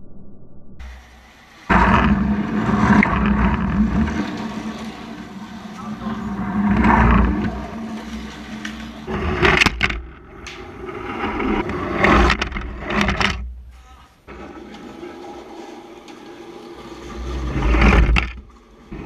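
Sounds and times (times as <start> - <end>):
slot cars crashing clatter: 0.8 - 13.4
slot cars whirring on track: 0.8 - 13.4, 14.2 - 19.0.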